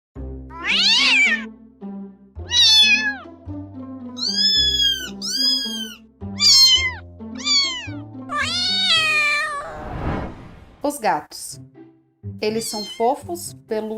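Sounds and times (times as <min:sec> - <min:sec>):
cats meowing: 0:00.5 - 0:01.5, 0:02.4 - 0:03.3, 0:04.2 - 0:09.8, 0:12.7 - 0:13.1.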